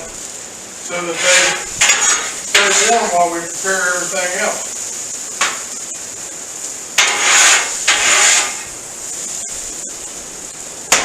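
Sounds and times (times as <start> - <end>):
high sizzling hiss: 0.0 - 11.0
spatula scraping hot cooking surface: 0.8 - 5.8, 7.0 - 9.5.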